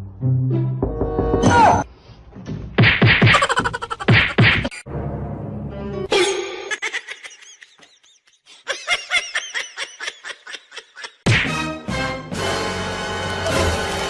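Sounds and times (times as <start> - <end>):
music: 0.0 - 1.9, 4.9 - 6.1, 11.3 - 14.0
person laughing: 3.3 - 4.4, 6.1 - 11.3.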